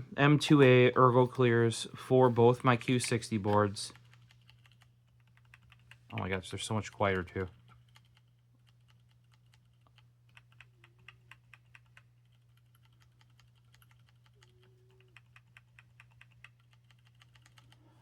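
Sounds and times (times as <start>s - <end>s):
faint mechanical keyboard typing: 2.9s - 18.0s.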